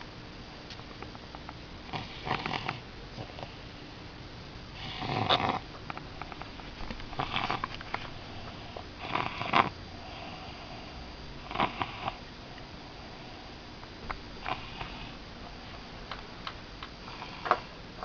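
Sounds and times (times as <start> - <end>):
rasping snoring: 1.9 - 3.5, 4.8 - 5.6, 7.1 - 12.2, 14.4 - 15.2.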